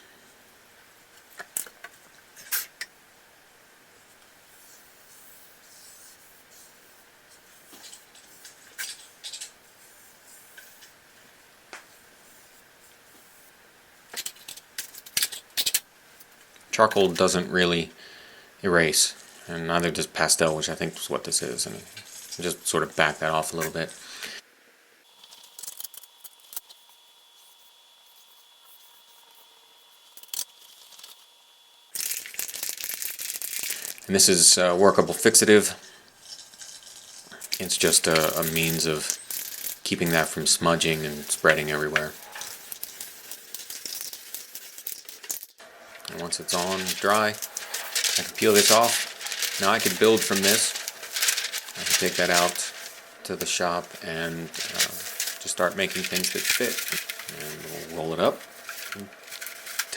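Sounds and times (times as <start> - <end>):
chalk scratching on paper: 4.6 - 8.6
aerosol can rattling: 32.0 - 34.1, 36.5 - 40.2, 41.0 - 45.6, 46.5 - 53.0, 54.4 - 59.9.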